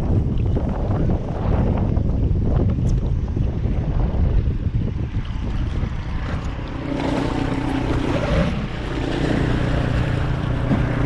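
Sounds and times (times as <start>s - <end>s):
wind buffeting microphone: 0.0s - 11.0s
steady hum: 5.4s - 11.0s.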